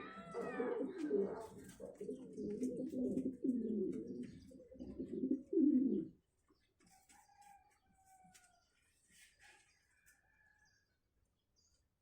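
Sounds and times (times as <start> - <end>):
dove cooing: 0.0 - 6.2.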